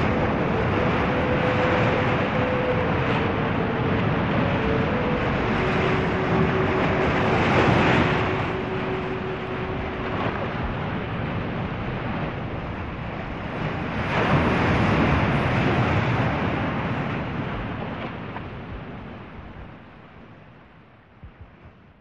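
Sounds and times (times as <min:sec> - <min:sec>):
waves breaking on stormy sea: 0:00.0 - 0:22.0
wind: 0:00.0 - 0:22.0.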